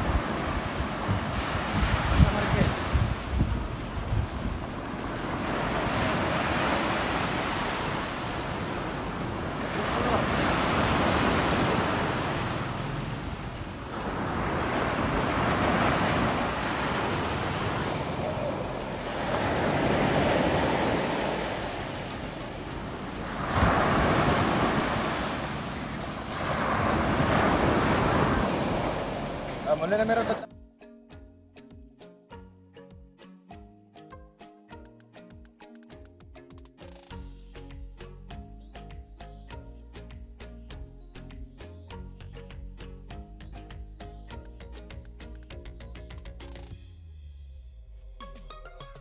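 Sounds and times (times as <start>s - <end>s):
wind buffeting microphone: 0.0s - 29.7s
waves washing onto beach: 0.0s - 30.5s.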